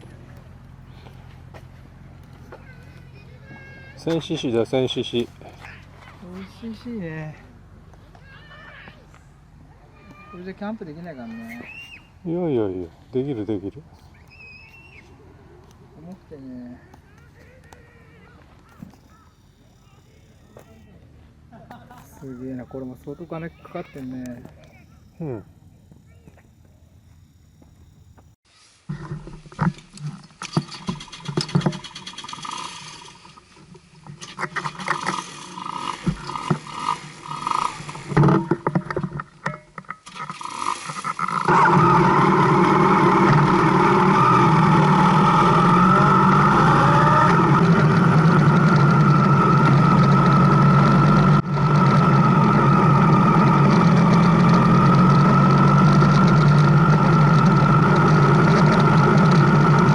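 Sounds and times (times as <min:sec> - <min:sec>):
motorcycle engine running: 0:15.1 - 0:28.4, 0:30.7 - 0:39.8, 0:41.3 - 0:59.9.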